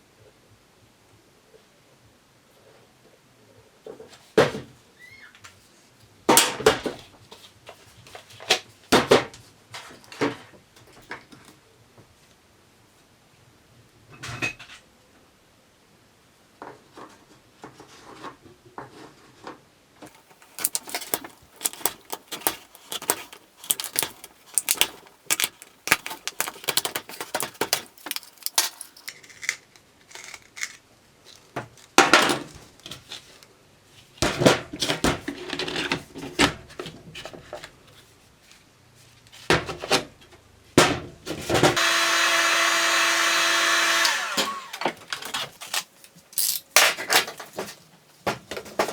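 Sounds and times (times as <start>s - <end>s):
parts clicking and rattling: 20.1s - 33.4s, 44.0s - 47.9s
small electric motor whining: 41.8s - 45.0s.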